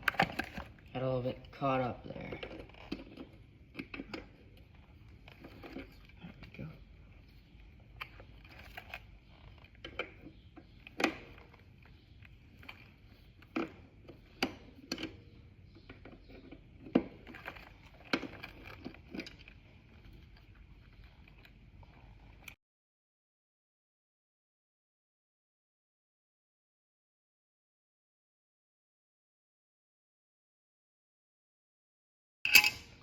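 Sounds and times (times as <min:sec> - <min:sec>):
hand tools clinking on metal: 0:32.5 - 0:33.0.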